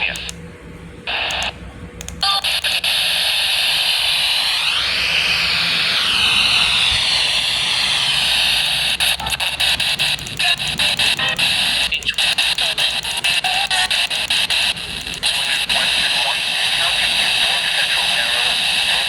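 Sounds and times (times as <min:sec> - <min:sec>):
radio static hiss: 0:00.0 - 0:00.4, 0:01.1 - 0:01.6, 0:02.2 - 0:19.0
static crackles: 0:01.1 - 0:01.5, 0:02.2 - 0:19.0.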